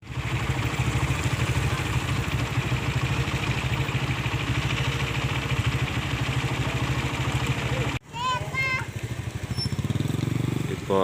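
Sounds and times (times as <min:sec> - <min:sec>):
large diesel engine idling: 0:00.0 - 0:08.0.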